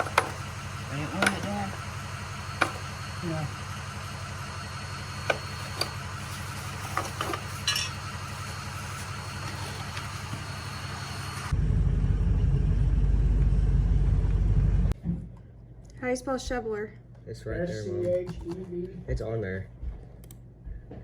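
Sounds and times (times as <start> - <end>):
sharp clicks and knocks: 0.0 - 4.6, 5.2 - 8.6
engine rumble: 0.0 - 16.6.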